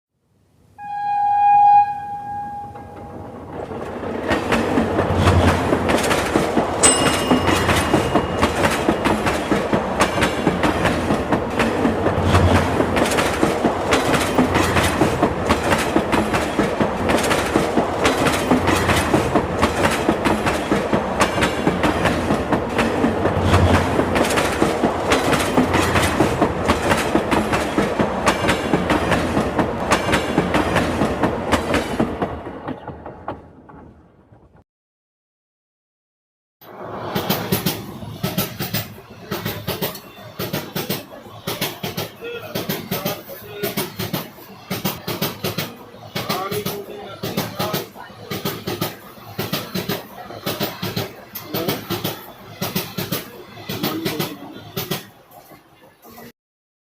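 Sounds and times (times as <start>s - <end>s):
train wheels clattering on rails: 2.8s - 34.6s, 36.7s - 56.3s.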